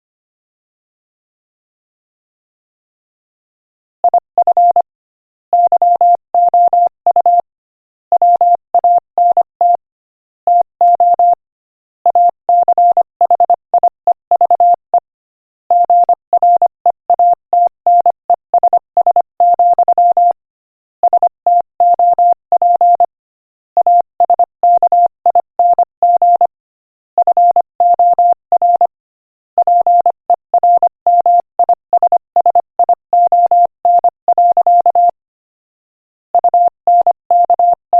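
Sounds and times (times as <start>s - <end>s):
morse code beeps: 4.1s - 4.9s, 5.6s - 7.4s, 8.2s - 9.8s, 10.5s - 11.4s, 12.1s - 14.8s, 15.7s - 20.4s, 21.0s - 23.1s, 23.8s - 26.5s, 27.2s - 29.0s, 29.6s - 35.2s, 36.4s - 37.9s.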